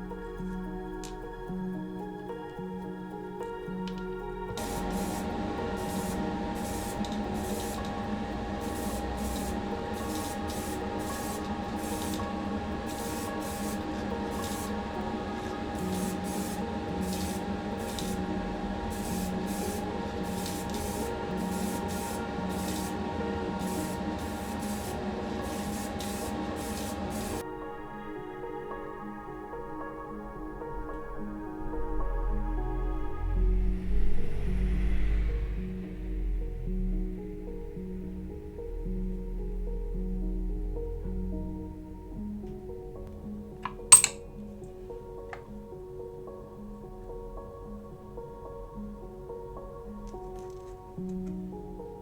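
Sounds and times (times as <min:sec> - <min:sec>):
spray paint hissing bursts: 0:04.5 - 0:27.4.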